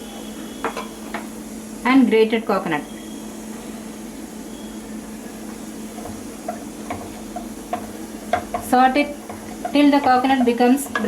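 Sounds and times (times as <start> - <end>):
steady low hum: 0.0 - 11.0
onion sauteing in a pan: 2.6 - 11.0
spatula tapping a pan: 5.9 - 11.0.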